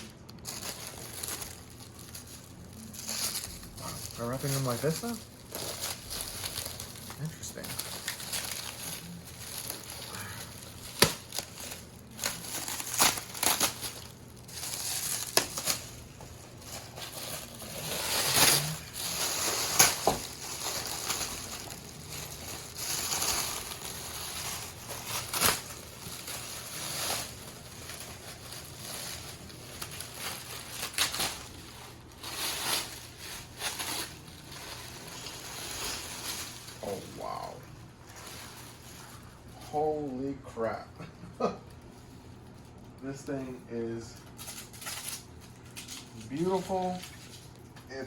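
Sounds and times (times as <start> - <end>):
packaging wrap crinkling: 0.0 - 40.8, 41.4 - 48.0
sharp snaps of wrap: 10.8 - 11.5.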